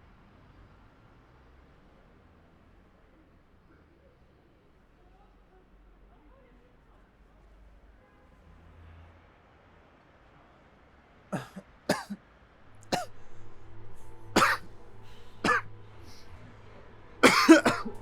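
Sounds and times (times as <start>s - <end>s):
person coughing: 11.4s - 12.2s, 12.8s - 13.1s, 14.3s - 16.3s, 17.2s - 18.0s
low steady hum: 12.6s - 18.0s.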